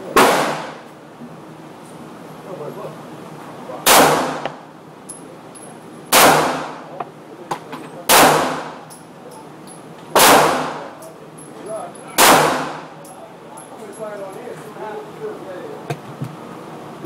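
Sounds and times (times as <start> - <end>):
pistol shots with echoing tail: 0.2 - 0.8, 3.8 - 4.6, 6.1 - 6.8, 8.1 - 8.8, 10.2 - 10.9, 12.2 - 12.9.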